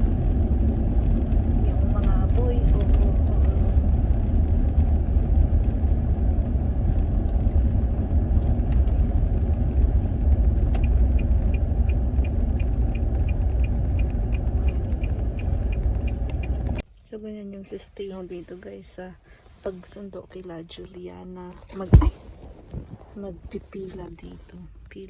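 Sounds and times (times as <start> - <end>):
car road and engine rumble: 0.0 - 16.9, 17.8 - 25.0
light regular ticking: 8.7 - 16.8.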